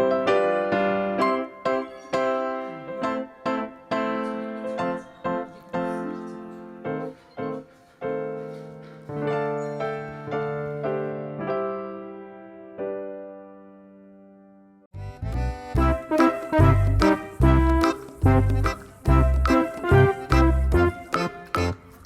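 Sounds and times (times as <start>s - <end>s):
slow gentle piano melody: 0.0s - 14.9s.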